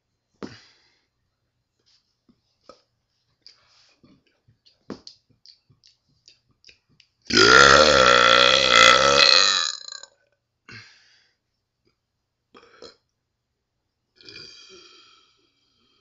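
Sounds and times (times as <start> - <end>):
man burping: 7.3 - 10.1, 14.2 - 15.4.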